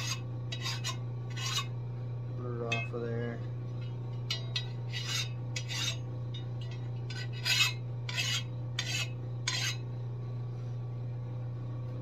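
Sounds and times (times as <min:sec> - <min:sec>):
hand file rasping on metal blade: 0:00.0 - 0:01.7, 0:04.3 - 0:06.0, 0:07.1 - 0:09.8.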